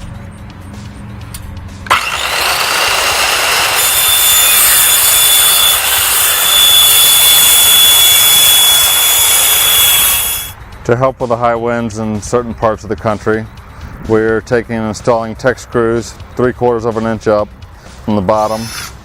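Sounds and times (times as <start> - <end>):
electric power saw cutting: 1.8 - 10.6, 18.4 - 19.0.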